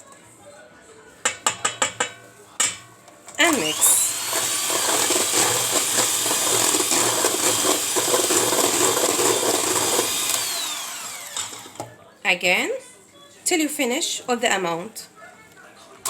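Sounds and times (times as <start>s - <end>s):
electric kitchen mixer running: 3.4s - 11.9s.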